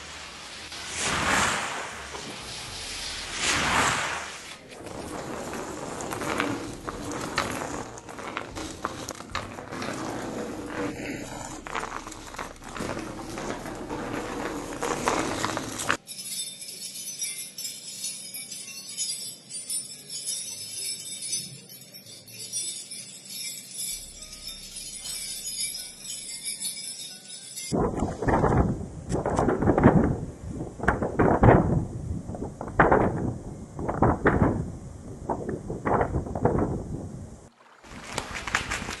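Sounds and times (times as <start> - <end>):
bells jingling: 14.2 - 27.8.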